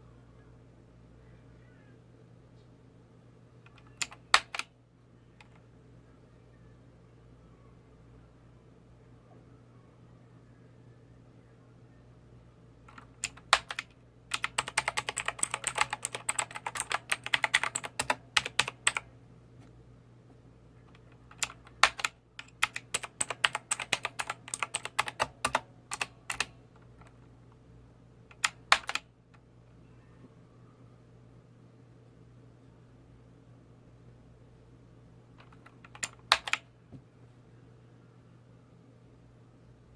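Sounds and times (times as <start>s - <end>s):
keyboard keystrokes clicking: 3.7s - 4.7s, 12.9s - 19.0s, 20.9s - 27.2s, 28.3s - 29.0s, 35.4s - 36.6s.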